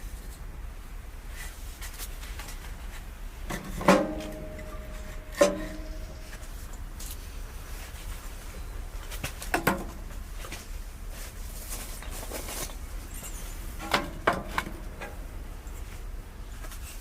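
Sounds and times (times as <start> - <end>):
faint low hum: 0.0 - 17.0
knocks and clatters of objects: 3.5 - 7.2, 9.1 - 10.7, 11.7 - 15.2.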